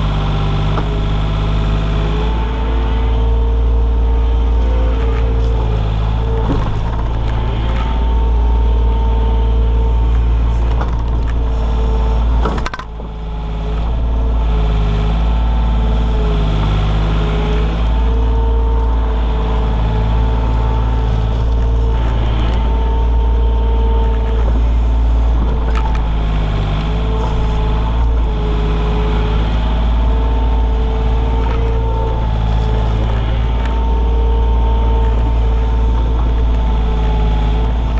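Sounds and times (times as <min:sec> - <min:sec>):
diesel engine running: 0:00.0 - 0:37.9
hydraulic whine: 0:00.0 - 0:37.9.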